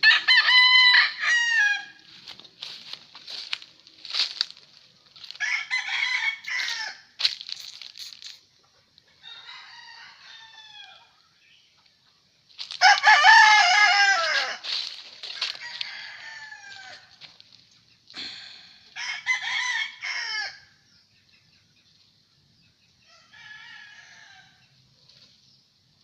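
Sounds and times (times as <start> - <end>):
roosters crowing: 0.0 - 4.4, 5.1 - 7.4, 9.1 - 11.2, 12.6 - 17.5, 18.2 - 20.8, 23.0 - 24.8.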